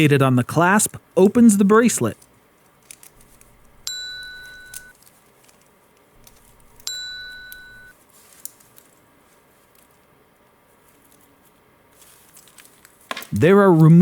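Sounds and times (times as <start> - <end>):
bright metallic dings: 3.8 - 4.9, 6.6 - 7.9.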